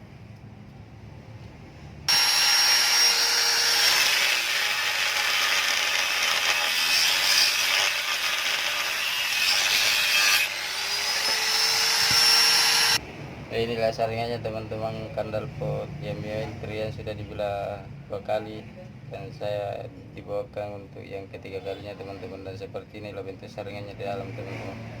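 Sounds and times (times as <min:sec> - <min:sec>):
angle grinder cutting metal: 0:02.1 - 0:13.0.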